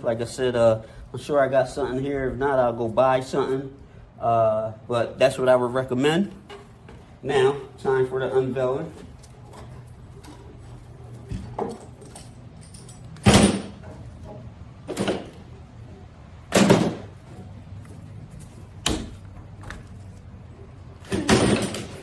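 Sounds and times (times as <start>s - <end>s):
metallic knocks and clatter: 9.4s - 15.6s, 21.0s - 22.0s.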